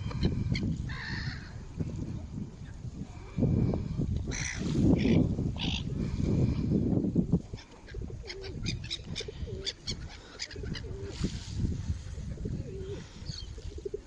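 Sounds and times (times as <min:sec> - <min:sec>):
pigeon cooing: 0:07.8 - 0:11.3, 0:12.4 - 0:14.0.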